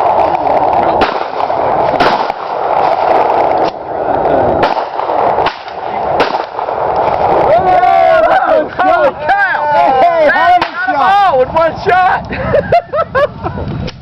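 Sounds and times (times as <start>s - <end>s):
steady background noise: 0.0s - 14.0s
gunshots: 0.8s - 3.8s, 4.5s - 7.4s.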